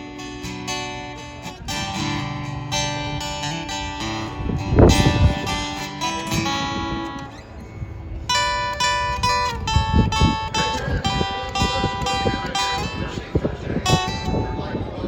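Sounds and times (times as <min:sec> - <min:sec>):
picked guitar playing: 0:00.0 - 0:15.0.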